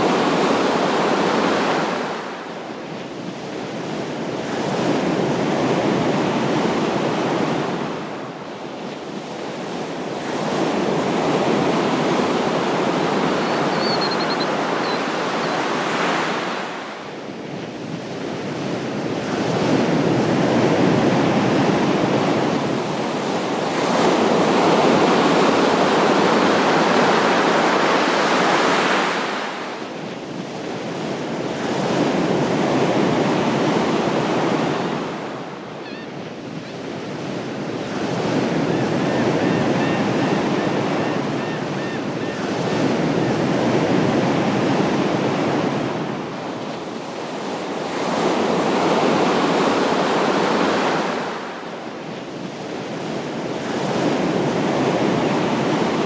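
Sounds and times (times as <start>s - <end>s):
ocean waves washing onto shore: 0.0s - 56.0s
faint high chirps: 13.5s - 15.1s.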